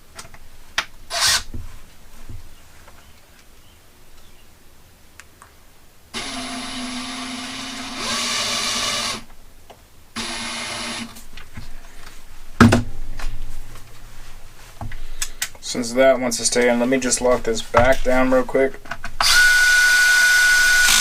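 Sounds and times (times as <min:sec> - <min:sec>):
power driver motor whine: 0:06.2 - 0:09.2.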